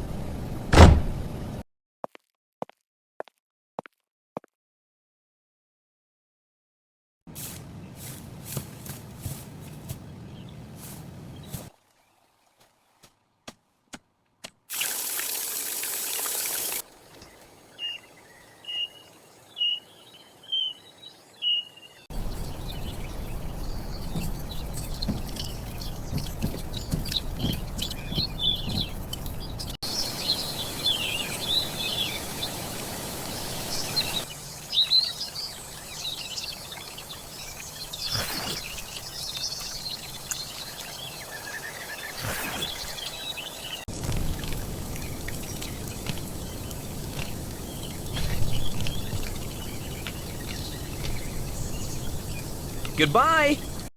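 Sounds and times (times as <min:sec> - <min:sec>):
outdoor ambience: 0:00.0 - 0:01.6, 0:07.3 - 0:53.9
small bird chirping: 0:17.2 - 0:53.9
hiss: 0:29.9 - 0:34.3.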